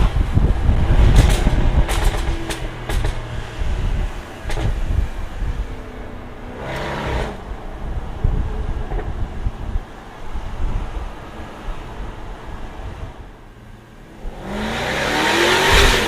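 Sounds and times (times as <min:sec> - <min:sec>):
exhaust crackles and pops: 0:00.0 - 0:05.6
engine exhaust rumble: 0:00.0 - 0:16.0.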